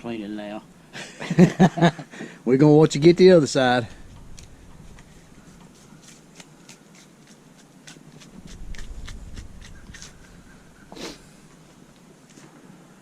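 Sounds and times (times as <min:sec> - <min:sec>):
knife snicking and scraping meat: 0:05.7 - 0:10.4.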